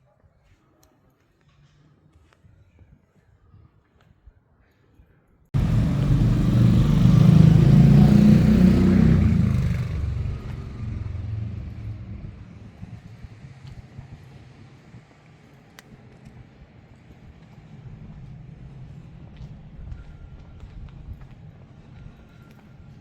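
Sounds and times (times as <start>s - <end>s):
vehicle engine rumbling: 5.6s - 23.0s.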